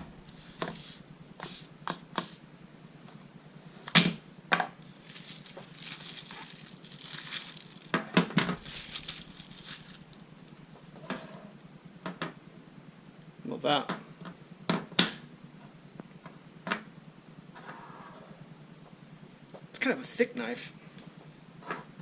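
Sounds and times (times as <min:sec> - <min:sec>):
rustling: 0:04.8 - 0:11.0.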